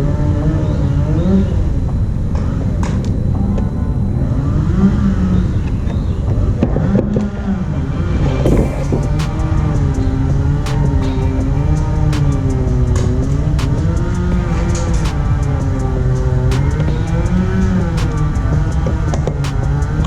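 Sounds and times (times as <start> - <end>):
background music with heavy bass: 8.4 - 20.0.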